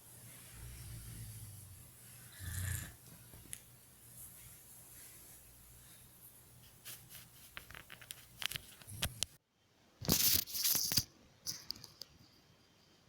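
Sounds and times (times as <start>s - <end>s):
soft clicks and rustles: 3.0s - 9.4s.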